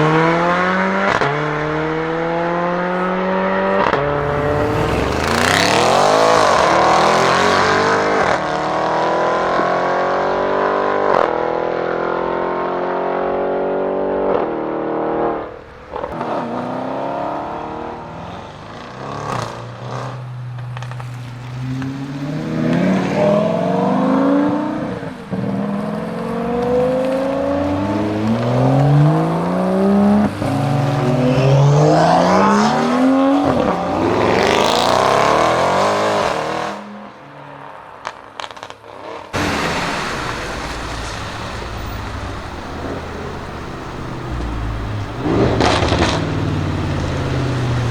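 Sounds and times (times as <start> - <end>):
exhaust cracks: 0.0 - 8.7, 18.6 - 36.7, 38.0 - 47.9
car engine revving: 0.0 - 47.9.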